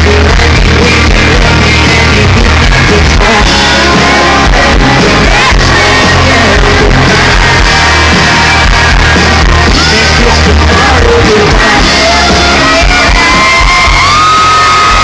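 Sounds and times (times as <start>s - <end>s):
crowd shouting and singing along: 0.0s - 15.0s
live country band playing: 0.0s - 15.0s.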